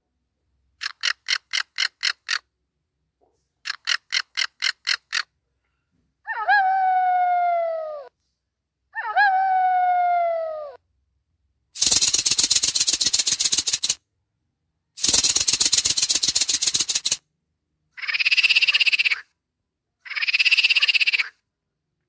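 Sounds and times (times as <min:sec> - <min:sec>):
animal call sliding down: 0:11.8 - 0:14.0, 0:15.0 - 0:17.2
rattling buzzes of clicks: 0:11.8 - 0:14.0, 0:15.0 - 0:17.2.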